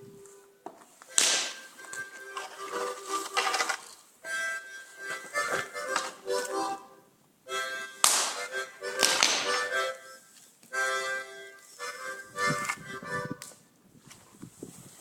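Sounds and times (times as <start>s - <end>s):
harmonica playing a tune: 0.0s - 13.7s.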